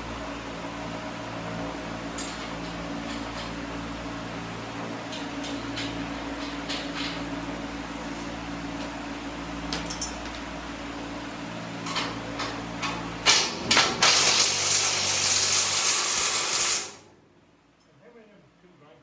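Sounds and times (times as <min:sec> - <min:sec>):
metal tools clinking: 0:08.8 - 0:10.4.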